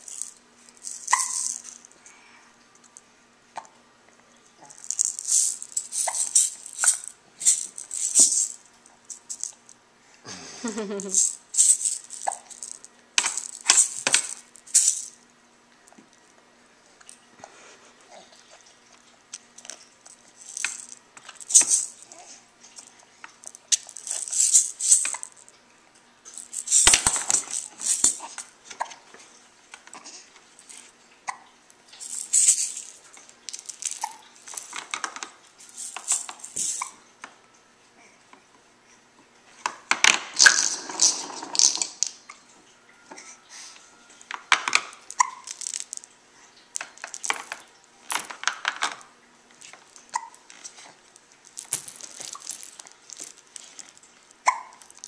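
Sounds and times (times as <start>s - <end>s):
toy rattle shaken: 0.0s - 2.0s, 4.7s - 9.8s, 10.6s - 15.2s, 19.6s - 22.2s, 22.8s - 25.5s, 26.3s - 28.5s, 30.6s - 30.9s, 32.0s - 37.0s, 40.0s - 42.2s, 44.6s - 46.1s, 46.7s - 49.0s, 49.6s - 55.0s.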